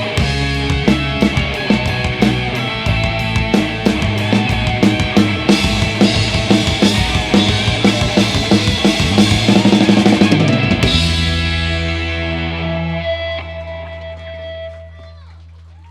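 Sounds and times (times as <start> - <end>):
live rock band playing: 0.0 - 15.0
quick drum hits: 0.7 - 11.6.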